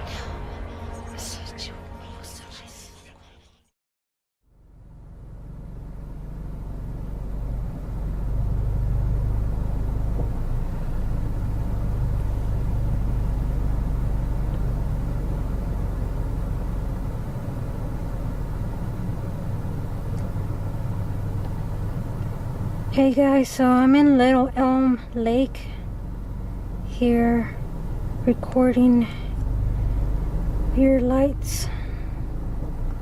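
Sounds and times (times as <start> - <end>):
car rumble from inside: 4.6 - 33.0.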